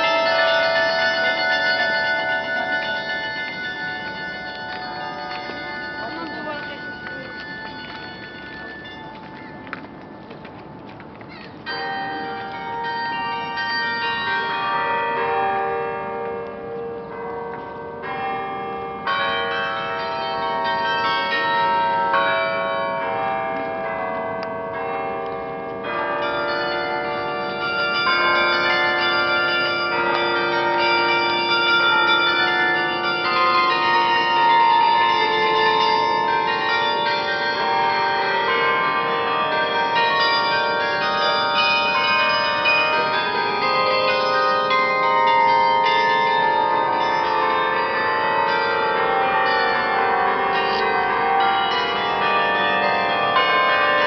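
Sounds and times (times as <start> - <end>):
church bells ringing: 0.0 - 54.0.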